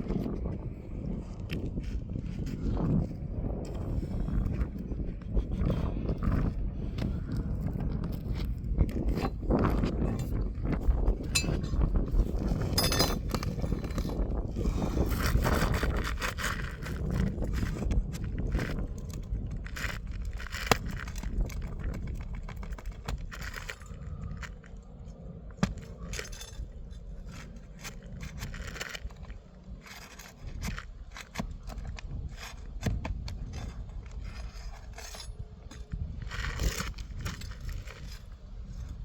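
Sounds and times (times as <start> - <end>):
steady low rumble: 0.0 - 39.0
roofing tool scraping and clicking: 11.3 - 39.0.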